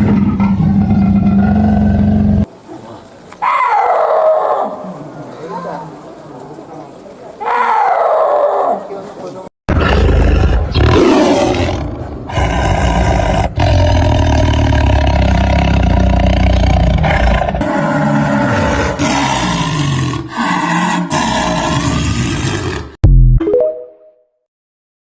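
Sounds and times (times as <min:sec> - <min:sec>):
big cats roaring and growling: 0:00.0 - 0:02.5, 0:09.7 - 0:23.0.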